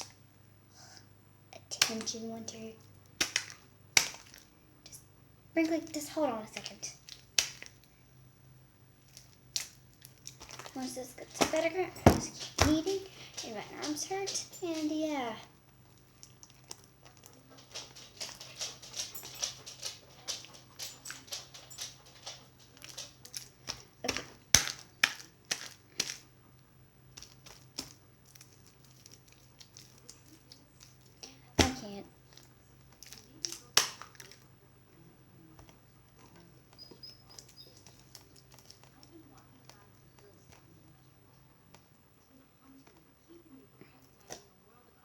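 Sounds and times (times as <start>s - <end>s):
wet clicks and pops: 3.1s - 4.5s, 7.0s - 7.9s, 9.1s - 10.8s, 27.2s - 34.4s
slime being kneaded: 22.8s - 26.2s.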